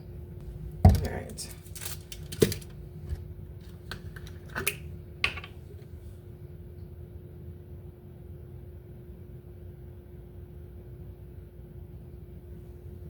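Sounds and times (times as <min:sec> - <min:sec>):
steady low hum: 0:00.0 - 0:13.0
aluminium foil crinkling: 0:01.0 - 0:02.8.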